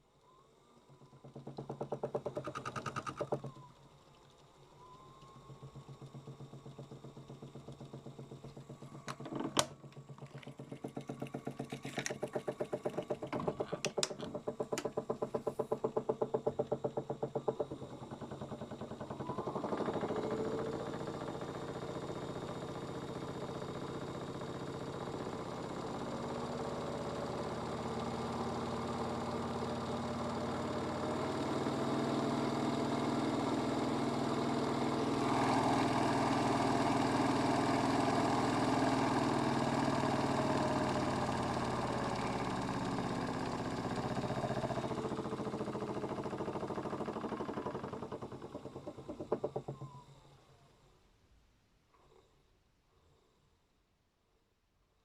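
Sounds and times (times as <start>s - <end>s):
toy washing machine motor running: 0.7s - 50.1s
unbalanced drum knocking: 5.3s - 19.3s.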